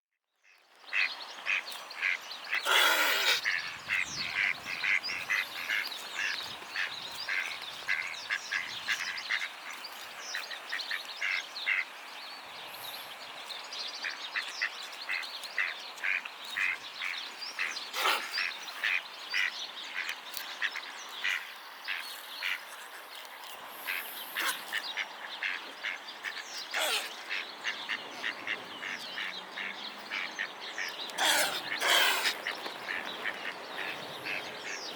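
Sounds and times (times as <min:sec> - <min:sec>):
waterfowl calls: 0:00.9 - 0:09.5, 0:23.9 - 0:34.9
swan coughing: 0:02.6 - 0:03.5, 0:18.0 - 0:18.4, 0:24.4 - 0:24.7, 0:26.7 - 0:27.2, 0:31.2 - 0:32.4.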